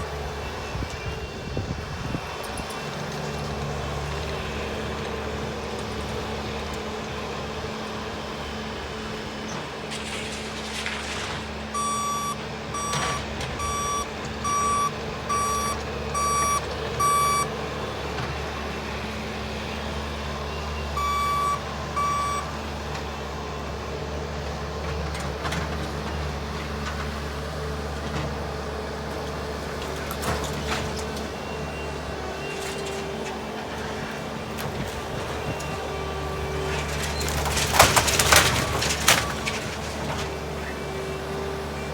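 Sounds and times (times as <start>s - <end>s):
skid loader engine running: 0.0s - 41.9s
backup alarm beeping: 11.8s - 17.5s, 20.9s - 22.5s.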